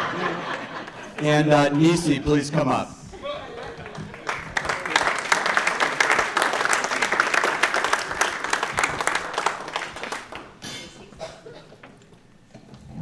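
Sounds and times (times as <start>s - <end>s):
audience applauding: 3.6s - 10.6s.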